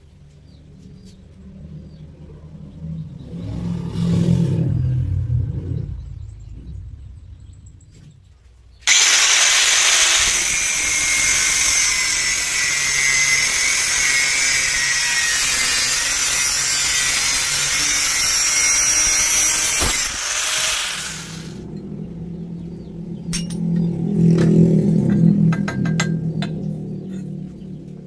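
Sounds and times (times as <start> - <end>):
welding arc hissing and crackling: 8.9 - 21.6.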